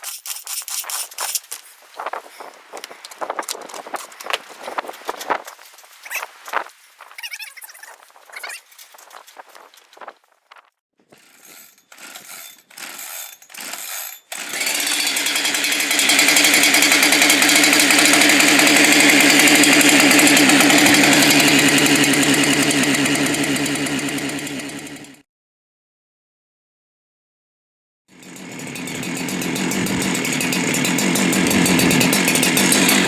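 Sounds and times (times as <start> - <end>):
chainsaw starter rope pulls: 0.0 - 25.2, 28.2 - 33.0
chainsaw engine running: 0.1 - 5.4, 11.1 - 25.2, 28.1 - 33.0.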